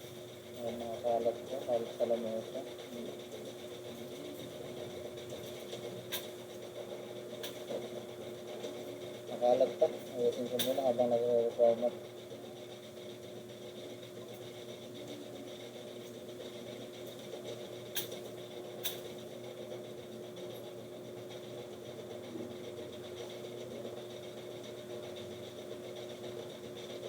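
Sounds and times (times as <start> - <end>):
fan humming: 0.0 - 14.8.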